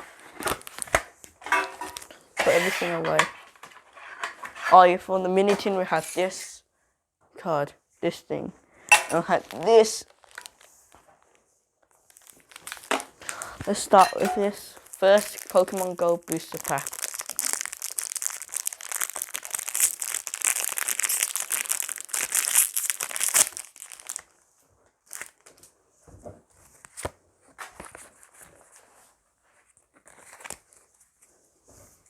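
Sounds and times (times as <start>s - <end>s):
foil wrapper crinkling and tearing: 0.1s - 3.0s, 9.2s - 11.3s, 11.9s - 24.4s, 25.0s - 25.6s, 30.0s - 30.9s.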